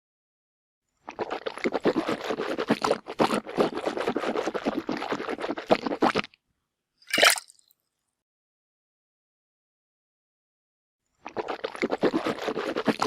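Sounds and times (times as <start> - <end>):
mouthwash sloshing in mouth: 1.1 - 6.3, 11.2 - 13.0
person spitting: 1.1 - 6.4, 11.2 - 13.0.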